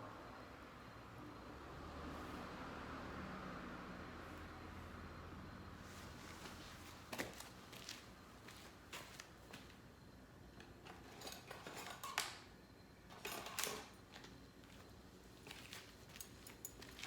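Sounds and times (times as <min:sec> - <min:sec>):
cooking gear clinking and rustling: 0:10.8 - 0:12.5, 0:13.1 - 0:14.4, 0:15.4 - 0:17.0.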